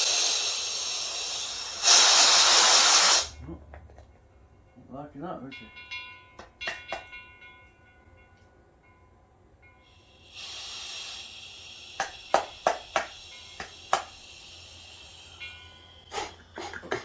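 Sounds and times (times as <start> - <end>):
compressed air hissing: 0.0 - 3.4, 9.9 - 17.0.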